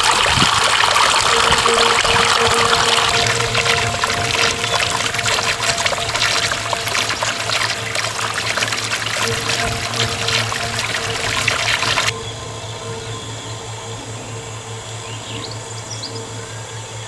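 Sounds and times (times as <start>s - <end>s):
water trickling and splashing: 0.0s - 12.1s
faint music drone: 0.0s - 17.0s.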